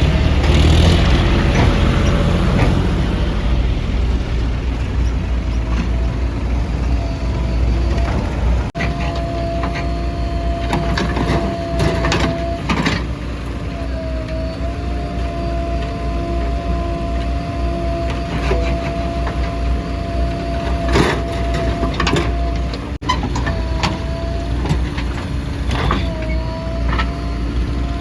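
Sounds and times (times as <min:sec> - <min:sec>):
knocks and clanks: 0:00.0 - 0:03.2
deep engine rumble: 0:00.0 - 0:28.0.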